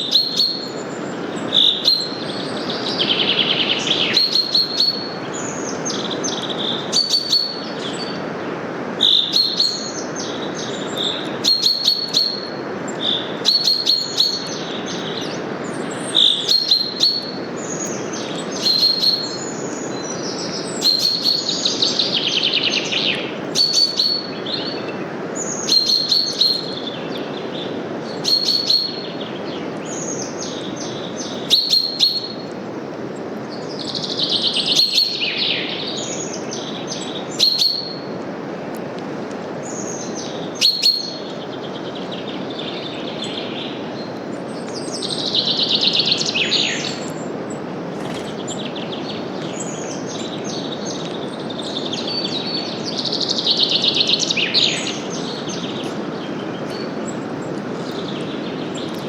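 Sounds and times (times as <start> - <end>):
bird trill: 0.0 - 8.2, 9.0 - 32.5, 33.6 - 38.1, 39.7 - 44.1
birds chirping: 0.0 - 38.8, 39.6 - 59.0
wind through leaves: 0.0 - 59.0.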